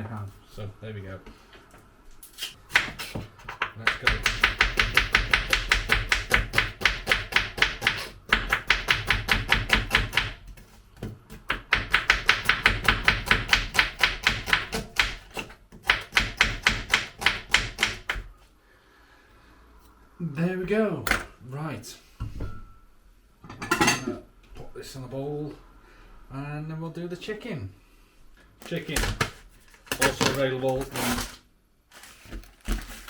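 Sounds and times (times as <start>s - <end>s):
knife chopping on a board: 2.7s - 10.4s, 11.0s - 18.3s.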